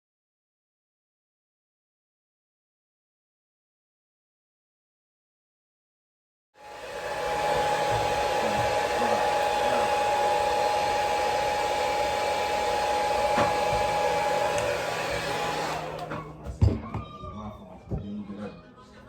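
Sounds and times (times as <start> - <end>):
hair dryer blowing: 6.6 - 16.3.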